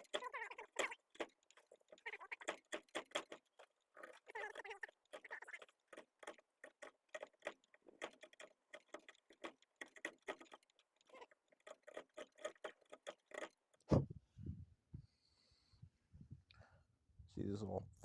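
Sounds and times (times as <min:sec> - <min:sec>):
chisel chipping wood: 0:11.6 - 0:14.0
thump: 0:13.9 - 0:14.2.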